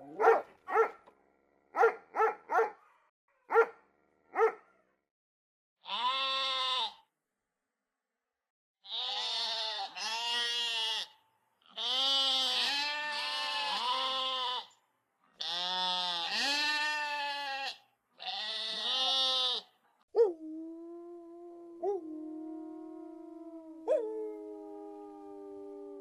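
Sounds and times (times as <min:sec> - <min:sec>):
livestock bleating: 0:05.8 - 0:07.0, 0:08.8 - 0:14.8, 0:15.4 - 0:19.7
held howl: 0:20.2 - 0:26.0.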